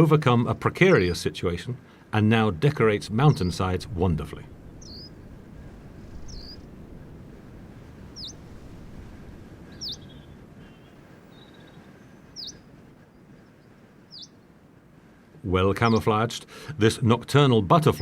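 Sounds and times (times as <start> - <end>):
low background rumble: 0.0 - 18.0
small bird chirping: 4.8 - 5.2, 6.0 - 6.8, 8.1 - 8.5, 9.7 - 14.5.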